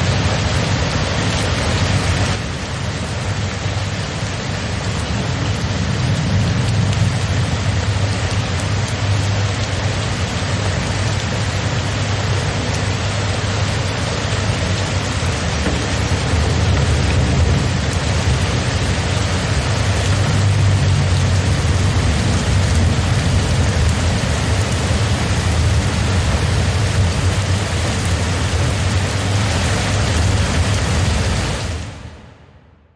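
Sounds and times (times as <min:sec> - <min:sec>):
heavy rain: 0:00.0 - 0:32.9.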